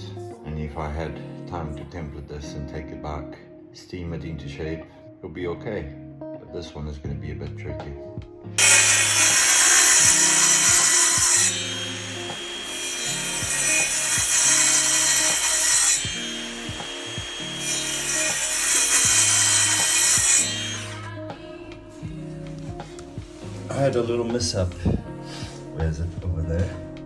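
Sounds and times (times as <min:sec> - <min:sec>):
saw cutting wood: 0:08.6 - 0:21.2.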